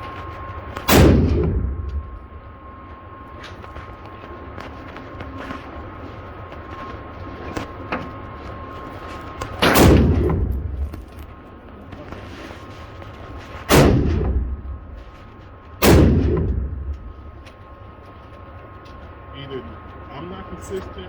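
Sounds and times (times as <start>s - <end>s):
gunshots with rolling echo: 0.8s - 2.4s, 9.6s - 10.9s, 13.7s - 15.1s, 15.8s - 17.3s.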